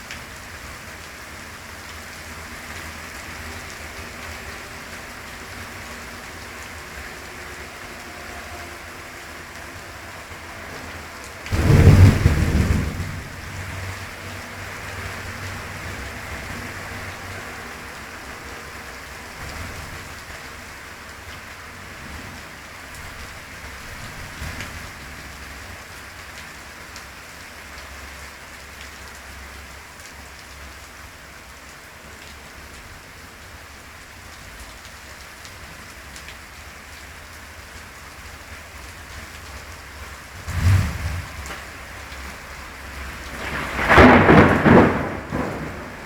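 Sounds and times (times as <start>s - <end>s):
steady rain falling: 0.0s - 46.0s
loud thunderclap rumbling: 11.5s - 14.0s, 40.4s - 41.7s, 43.1s - 46.0s.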